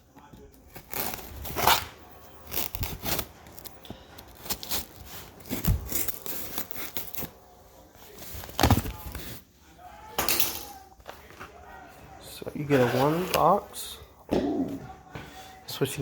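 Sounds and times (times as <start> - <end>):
tape tearing: 0.7 - 7.4
cardboard scraping and rustling: 8.0 - 9.4, 12.7 - 13.7.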